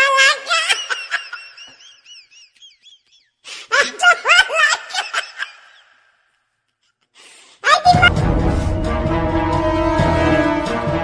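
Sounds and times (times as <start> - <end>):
children laughing: 0.3 - 6.1.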